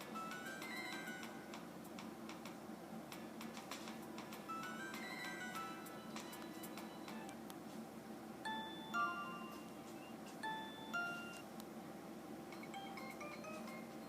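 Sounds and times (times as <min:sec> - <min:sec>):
cellphone chime ringtone: 0:00.2 - 0:01.4, 0:04.5 - 0:07.3, 0:08.5 - 0:11.4, 0:12.5 - 0:14.0.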